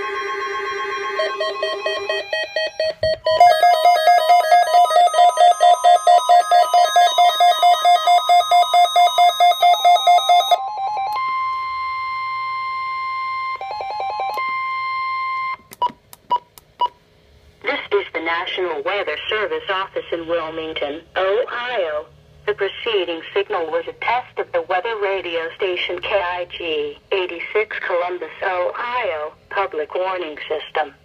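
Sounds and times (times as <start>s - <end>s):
rapidly pulsing beep: 0.0s - 10.6s
steady high tone: 0.0s - 15.6s.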